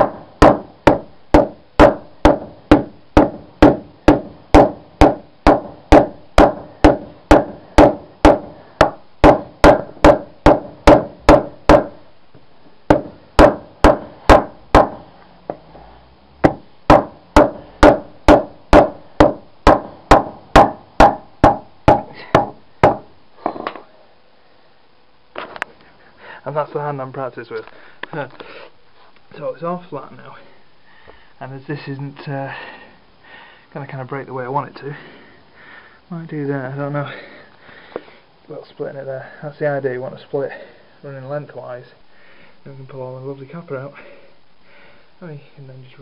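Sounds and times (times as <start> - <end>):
hammer pounding metal pipe: 0.0 - 12.0, 12.9 - 15.1, 16.4 - 23.7.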